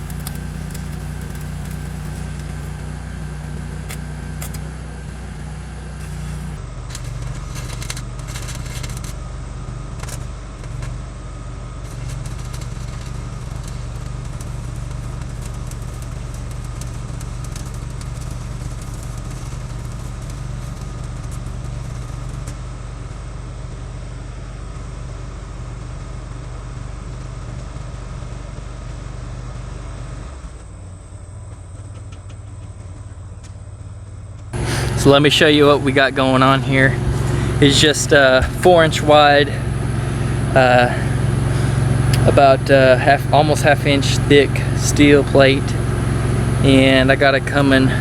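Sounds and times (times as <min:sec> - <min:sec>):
welding arc crackling: 0:00.0 - 0:09.1, 0:34.6 - 0:48.0
engine drone: 0:00.0 - 0:48.0.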